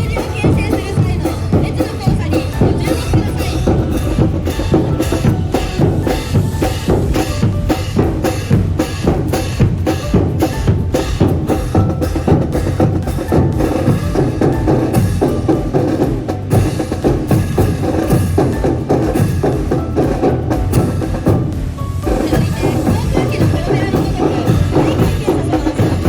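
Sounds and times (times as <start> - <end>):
drums clacking march rhythm: 0.0 - 26.0
marching brass band: 0.0 - 26.0.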